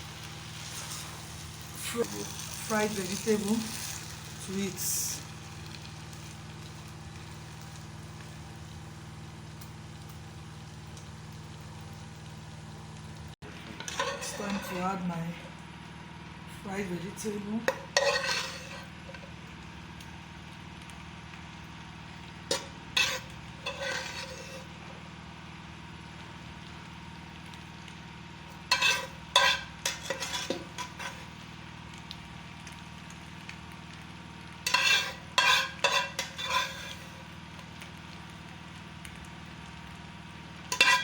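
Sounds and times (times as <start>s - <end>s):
utensil scraping and knocking pot: 13.7s - 14.8s, 17.6s - 19.2s, 22.5s - 24.7s, 28.7s - 31.2s, 34.7s - 37.1s, 40.7s - 41.0s.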